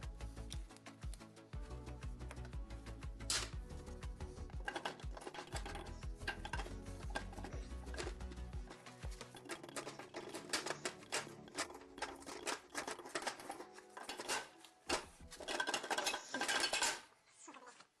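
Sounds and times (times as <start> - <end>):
metallic objects clicking and clinking: 3.2 - 3.6, 4.4 - 17.1.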